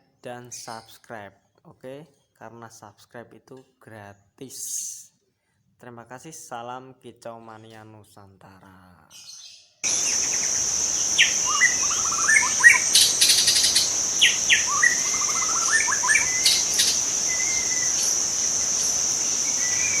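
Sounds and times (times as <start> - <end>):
bird calling: 9.8 - 20.0
cricket trilling: 9.8 - 20.0.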